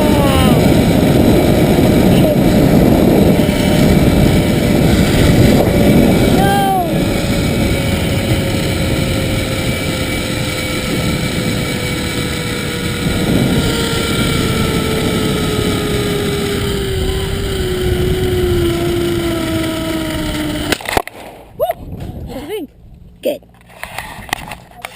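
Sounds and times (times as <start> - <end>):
zip line pulleys whirring: 0.0 - 21.1
wind noise on microphone: 0.0 - 24.9.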